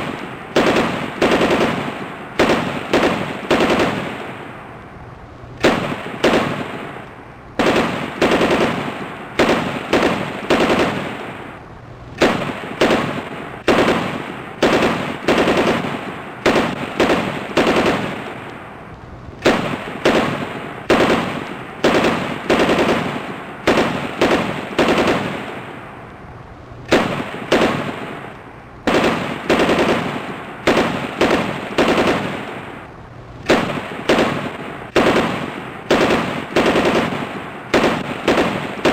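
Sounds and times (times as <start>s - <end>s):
machine gun bursts: 0.0s - 4.1s, 7.6s - 11.0s, 12.2s - 18.2s, 19.4s - 25.4s, 28.9s - 32.4s, 33.5s - 38.9s
gunfire echo: 0.0s - 4.7s, 5.6s - 26.0s, 26.8s - 38.9s.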